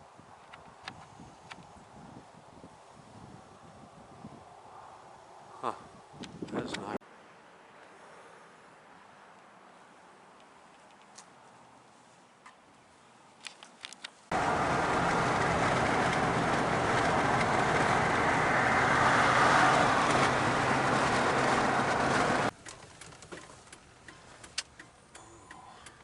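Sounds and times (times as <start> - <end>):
car road and engine noise: 4.3 - 26.0
low hum: 14.3 - 22.5
faint clicks: 22.5 - 26.0.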